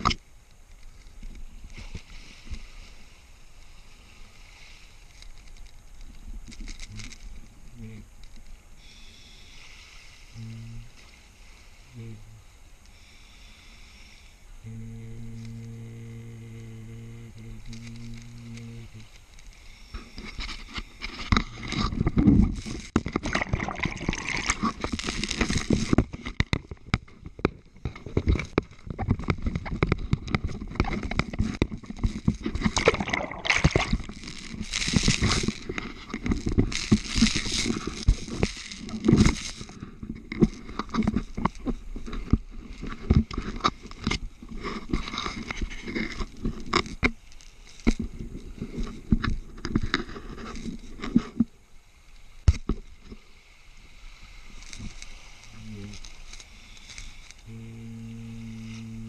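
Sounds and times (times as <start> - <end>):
regulator hiss on inhalation: 0.8 - 23.0, 27.8 - 51.5, 53.0 - 59.0
bubbly gurgling exhalations: 22.4 - 26.0, 30.5 - 35.9.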